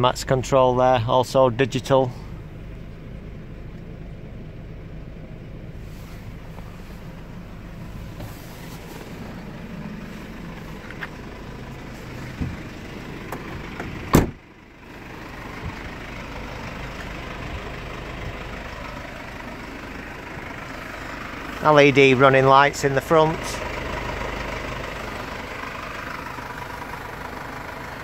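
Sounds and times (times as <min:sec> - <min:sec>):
car engine idling: 0:00.0 - 0:28.0
door slamming: 0:14.1 - 0:14.4.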